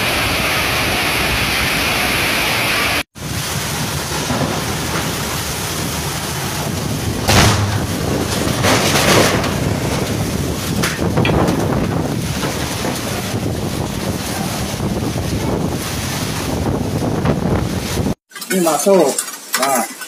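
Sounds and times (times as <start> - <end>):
heavy rain pouring: 0.0 - 19.6
wind gusts buffeting microphone: 3.2 - 18.2.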